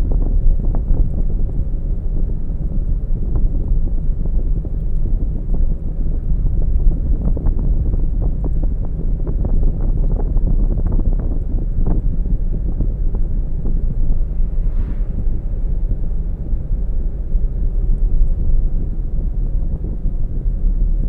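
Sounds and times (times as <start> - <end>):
road and tyre rumble: 11.4 - 21.0.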